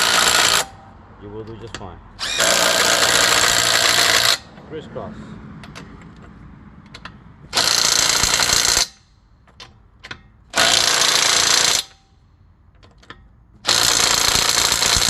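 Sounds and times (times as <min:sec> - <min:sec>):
impact wrench running bolts: 0:01.6 - 0:04.5, 0:06.9 - 0:12.1, 0:12.8 - 0:15.0.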